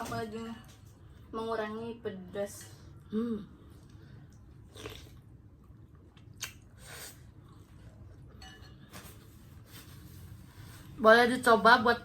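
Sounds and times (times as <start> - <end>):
chewing: 3.8 - 6.6.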